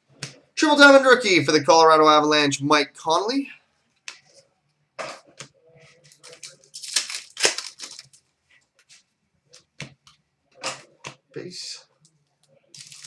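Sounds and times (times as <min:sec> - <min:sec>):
trading cards rustling: 0:06.0 - 0:08.2, 0:12.8 - 0:13.0.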